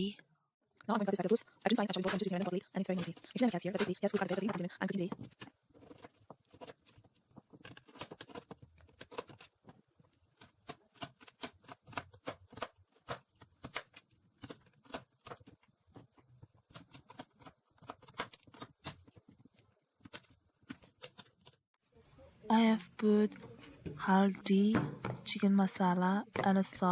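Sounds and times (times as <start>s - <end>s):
knife chopping on cutting board: 24.8s - 25.4s.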